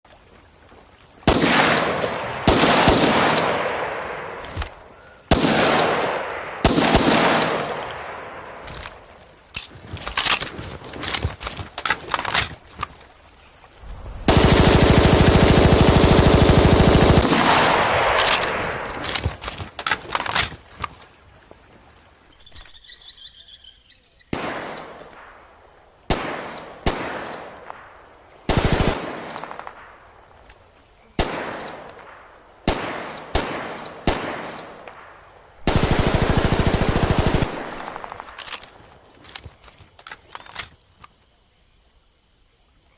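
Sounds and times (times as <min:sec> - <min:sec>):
submachine gun bursts: 0:14.3 - 0:20.6, 0:35.7 - 0:40.8.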